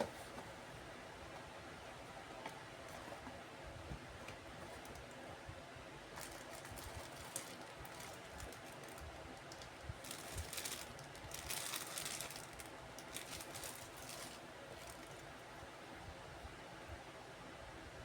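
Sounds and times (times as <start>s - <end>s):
plastic packaging crinkling: 6.1s - 15.4s.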